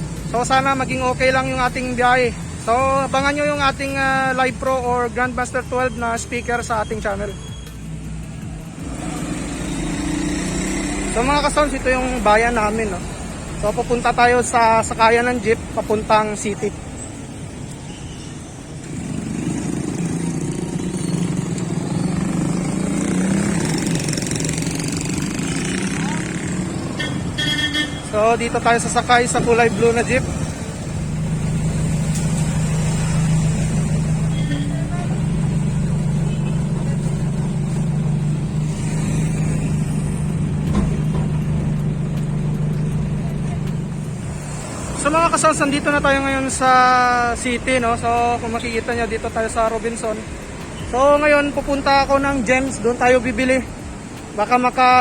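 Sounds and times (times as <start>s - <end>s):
vehicle engine running: 18.9s - 55.0s.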